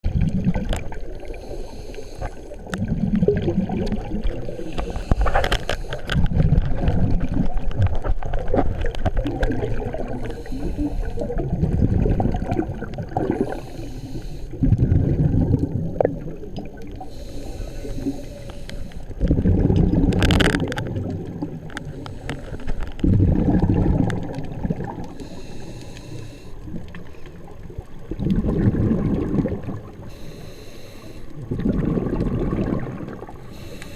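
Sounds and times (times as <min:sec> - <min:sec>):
bubbling exhaled bubbles: 0:00.0 - 0:01.5, 0:02.3 - 0:13.8, 0:14.5 - 0:18.3, 0:19.1 - 0:25.4, 0:26.6 - 0:30.1, 0:31.4 - 0:33.8
regulator inhalation hiss: 0:01.3 - 0:02.6, 0:10.2 - 0:11.2, 0:13.3 - 0:14.6, 0:17.0 - 0:19.1, 0:25.1 - 0:26.7, 0:30.1 - 0:31.3, 0:33.4 - 0:33.9.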